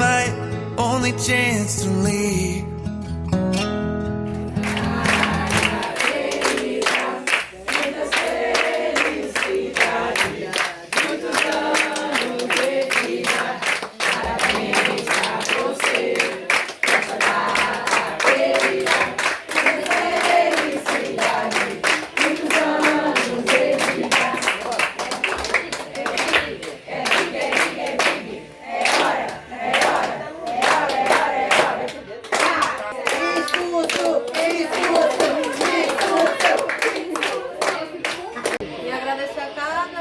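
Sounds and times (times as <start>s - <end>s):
people clapping along: 4.3s - 38.6s
group singing a birthday song: 4.4s - 39.8s.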